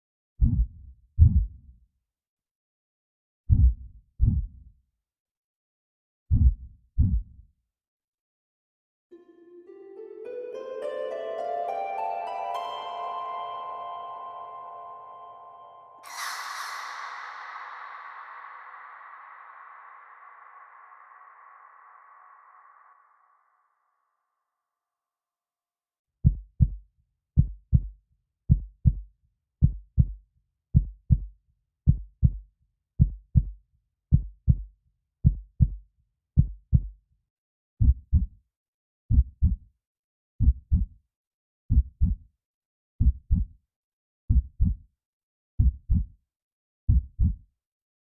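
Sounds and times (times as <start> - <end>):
heartbeat thumps: 0.4 - 1.6, 3.5 - 4.5, 6.3 - 7.3, 39.1 - 39.6, 44.3 - 44.8, 45.6 - 46.1, 46.9 - 47.4.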